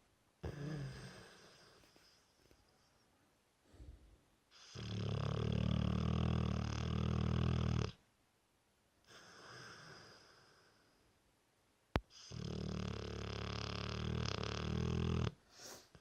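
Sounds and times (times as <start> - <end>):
dog snoring: 0.4 - 2.2, 4.5 - 8.0, 9.1 - 10.9, 12.1 - 15.8.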